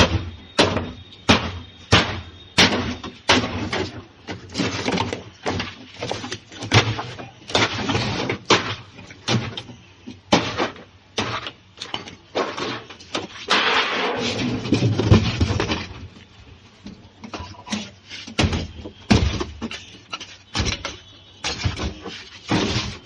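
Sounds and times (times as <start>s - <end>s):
knocks and clanks on metal: 16.9s - 23.0s.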